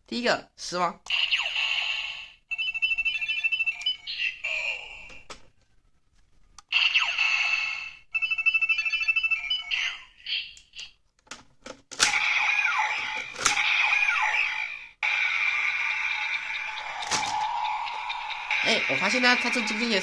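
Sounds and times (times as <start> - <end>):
toy belt electronic sound effects: 1.1 - 5.2, 6.7 - 10.8, 12.1 - 20.0
sharp plastic clicks: 10.6 - 12.2, 13.2 - 13.7
looping jingle with swooping tones: 15.3 - 20.0
rapid beeps: 15.8 - 20.0.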